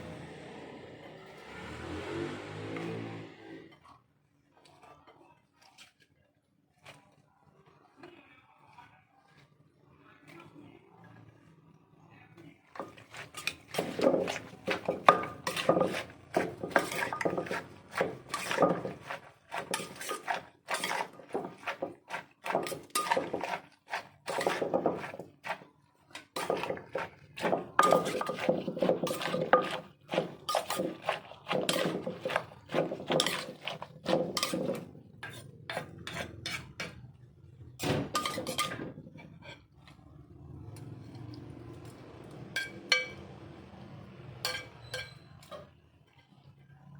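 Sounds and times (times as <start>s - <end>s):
pestle pounding in a mortar: 12.8s - 25.6s, 26.2s - 36.6s.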